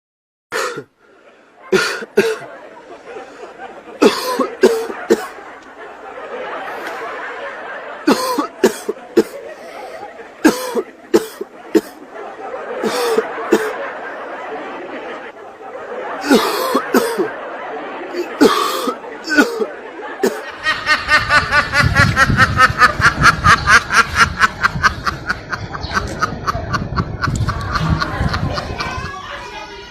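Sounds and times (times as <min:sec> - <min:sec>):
person coughing: 0:00.5 - 0:00.9, 0:01.8 - 0:02.4, 0:04.0 - 0:05.3, 0:08.1 - 0:09.3, 0:10.5 - 0:11.9, 0:18.4 - 0:20.4
rapid high-pitched laughter: 0:01.4 - 0:29.9
breathing: 0:03.0 - 0:03.6, 0:09.5 - 0:10.2.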